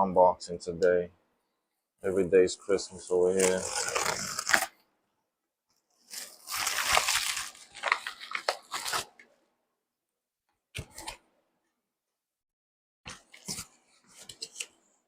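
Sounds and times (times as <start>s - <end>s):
packaging tearing and crinkling: 3.3s - 4.7s, 6.1s - 9.2s.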